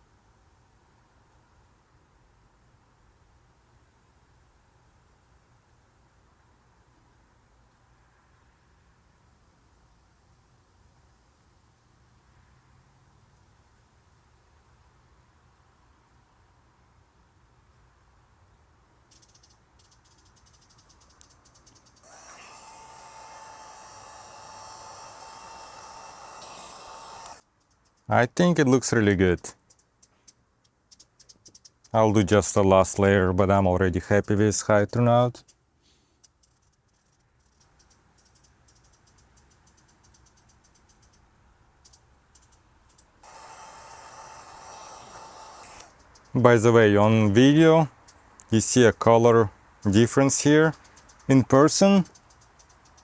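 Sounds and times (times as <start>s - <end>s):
heat gun hissing and whining: 22.0s - 27.4s, 43.2s - 46.0s
rapid faint ticking: 36.2s - 46.6s, 49.8s - 51.4s, 52.0s - 53.0s.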